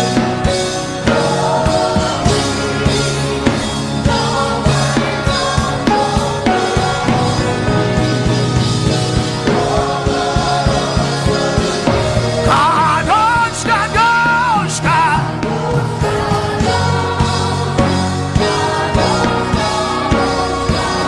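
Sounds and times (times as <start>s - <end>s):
drum kit beat: 0.0s - 21.0s
gospel worship music: 0.0s - 21.0s
person singing: 9.5s - 17.6s.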